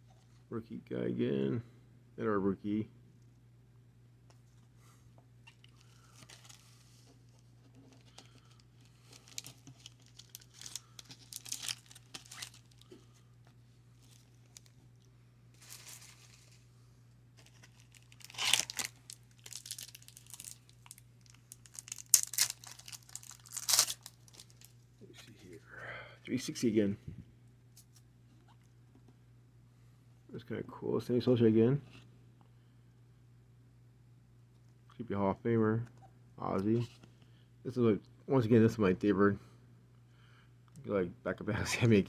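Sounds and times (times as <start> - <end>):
wrappers tearing and crinkling: 8.0 - 12.9, 15.6 - 16.5, 17.4 - 24.8.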